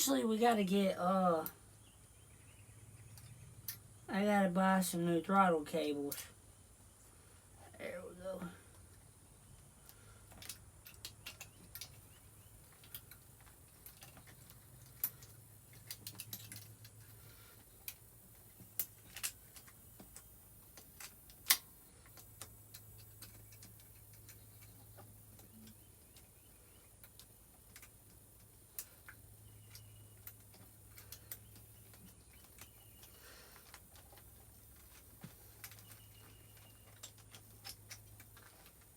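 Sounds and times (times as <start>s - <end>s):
metal tools clicking and tapping: 12.7s - 17.2s.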